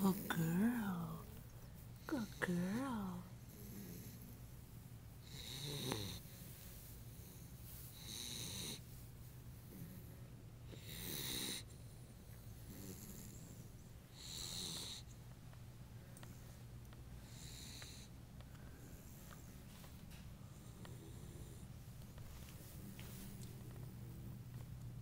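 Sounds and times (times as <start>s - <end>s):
dog snoring: 2.0s - 4.5s, 5.2s - 8.9s, 9.6s - 15.2s, 17.2s - 18.2s, 20.5s - 21.8s.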